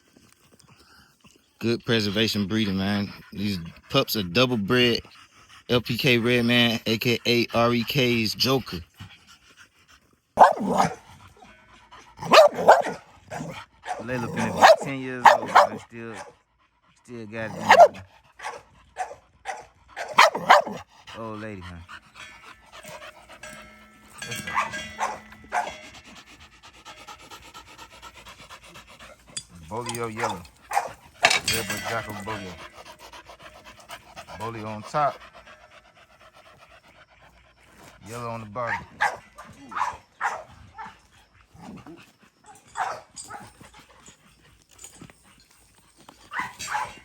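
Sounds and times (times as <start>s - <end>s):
dogs barking: 10.4s - 16.5s, 17.4s - 47.0s.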